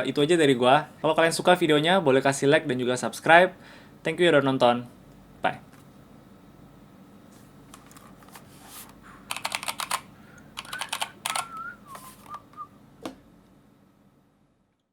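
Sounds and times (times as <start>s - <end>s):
mechanical keyboard typing: 9.3s - 11.7s
faint wavering whistle-like tone: 10.7s - 12.8s.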